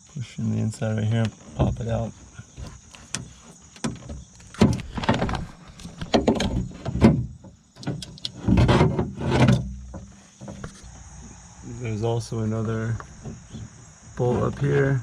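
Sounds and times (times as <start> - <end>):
crickets chirping: 0.0 - 15.0
clicks and rattles of car door parts: 1.2 - 10.8.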